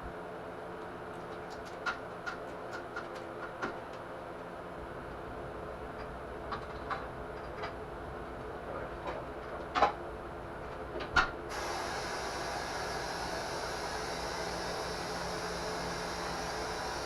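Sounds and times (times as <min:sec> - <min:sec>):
steady hiss: 0:11.5 - 0:17.0.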